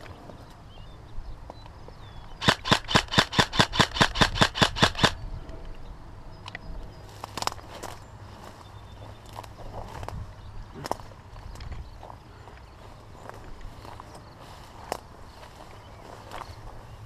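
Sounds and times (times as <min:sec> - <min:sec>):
airsoft rifle firing: 0:02.4 - 0:05.2.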